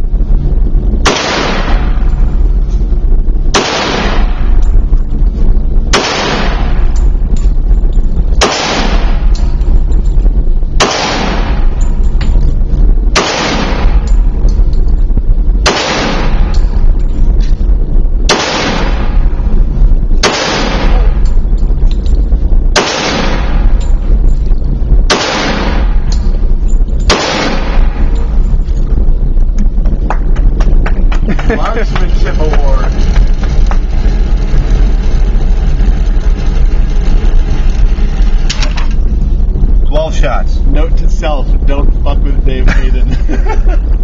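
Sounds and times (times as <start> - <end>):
wind rumble on microphone: 0.0 - 44.0
pistol shots with echo: 1.0 - 2.0, 3.5 - 4.4, 5.9 - 6.9, 8.4 - 9.2, 10.8 - 11.7, 13.2 - 14.1, 15.6 - 16.6, 18.3 - 19.2, 20.2 - 21.2, 22.8 - 23.7, 25.1 - 26.0, 27.1 - 28.0.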